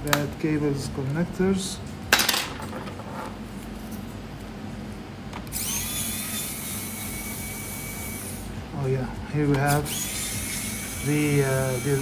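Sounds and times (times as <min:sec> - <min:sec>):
electric screwdriver whining: 0:05.5 - 0:08.5, 0:09.7 - 0:12.0.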